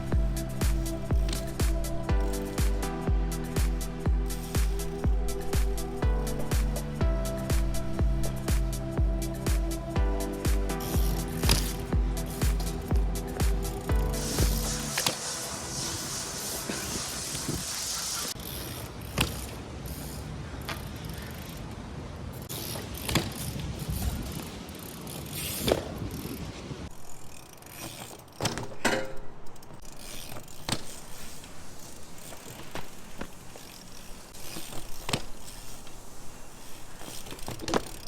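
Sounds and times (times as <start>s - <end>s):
bike freewheel ratchet ticking: 0.0s - 20.2s, 22.4s - 38.0s
tyre noise on wet pavement: 0.0s - 38.0s
hiss: 10.8s - 18.4s.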